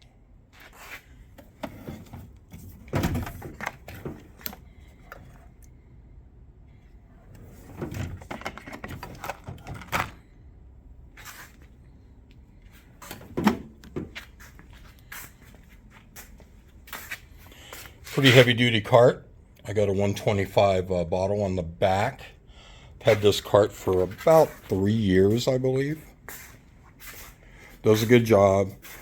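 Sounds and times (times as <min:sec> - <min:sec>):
metal drawers sliding and clunking: 0:01.4 - 0:05.5, 0:07.2 - 0:10.2, 0:12.8 - 0:14.2.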